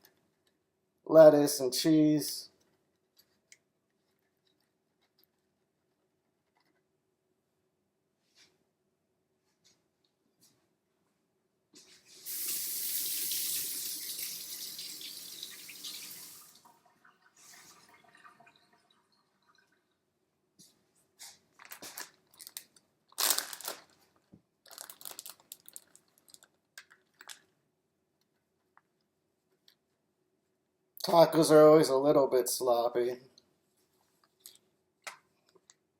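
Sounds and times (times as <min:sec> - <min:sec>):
tap water running: 0:12.2 - 0:19.8
taco shells crunching: 0:24.7 - 0:27.4.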